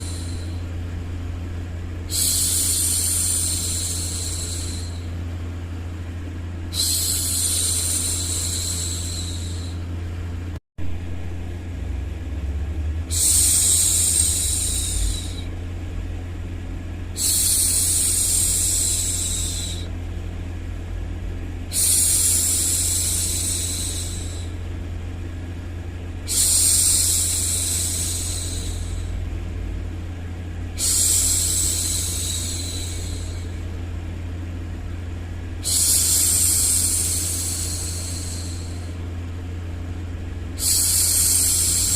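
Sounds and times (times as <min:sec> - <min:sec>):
low white noise: 0:00.0 - 0:41.9.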